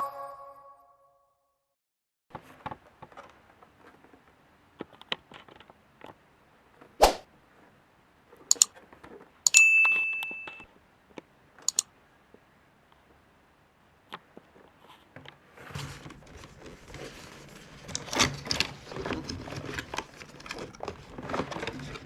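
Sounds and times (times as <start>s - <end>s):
packaging clicks and rustles: 2.3s - 12.4s, 14.1s - 22.0s
short ringing ding: 9.5s - 10.6s.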